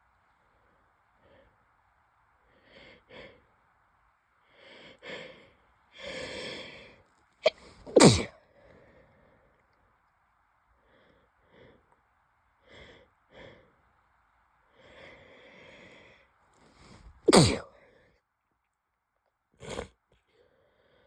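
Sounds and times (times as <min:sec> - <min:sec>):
gasping in-breaths: 0:04.4 - 0:09.6, 0:14.7 - 0:18.2
person sneezing: 0:07.5 - 0:08.4, 0:17.3 - 0:17.7.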